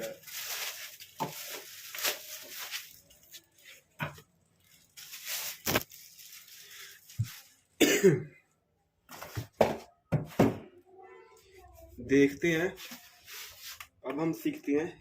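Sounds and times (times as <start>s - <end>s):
packaging rustling: 0.0s - 7.6s.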